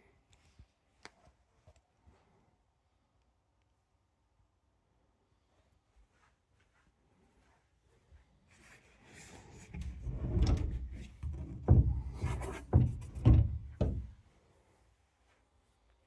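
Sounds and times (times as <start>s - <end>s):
rumbling scraping noise: 9.5s - 14.0s.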